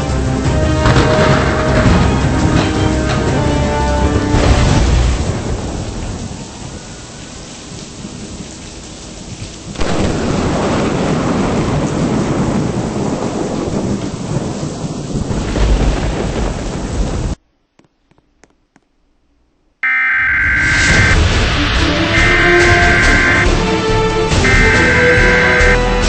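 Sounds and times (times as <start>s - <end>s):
heavy rain: 0.0s - 17.4s, 19.8s - 26.0s
rumbling thunder: 0.6s - 7.1s, 7.9s - 17.4s, 20.3s - 23.6s, 24.3s - 25.8s.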